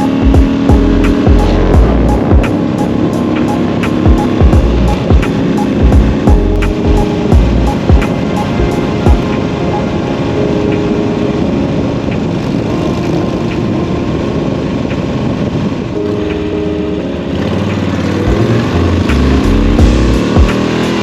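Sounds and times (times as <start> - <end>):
motorcycle engine running: 0.0 - 9.3, 17.3 - 21.0.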